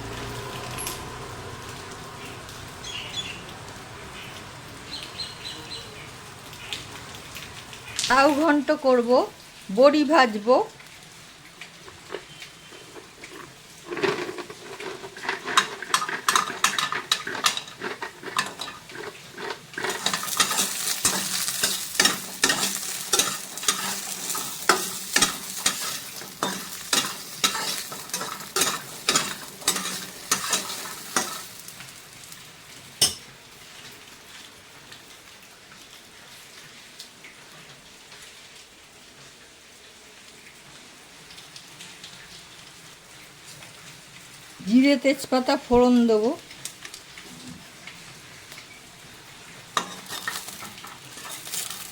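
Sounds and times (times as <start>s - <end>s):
dumplings sizzling in hot oil: 0.0s - 51.9s
spatula scraping a pan: 12.1s - 31.7s, 49.8s - 51.9s.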